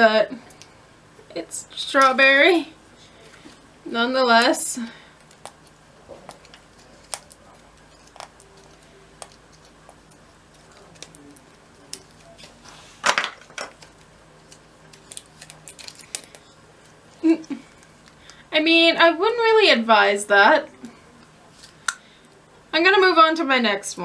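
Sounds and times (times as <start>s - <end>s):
packaging rustling: 5.3s - 18.4s.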